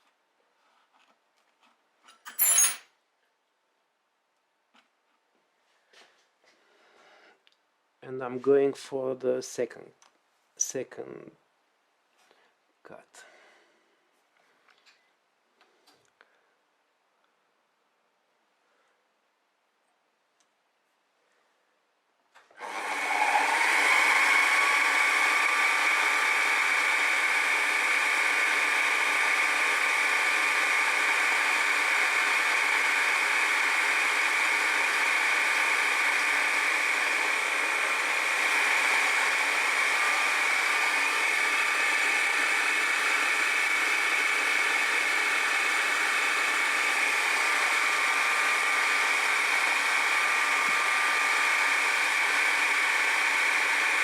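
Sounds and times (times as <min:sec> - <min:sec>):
electric motor whine: 0:22.6 - 0:54.0.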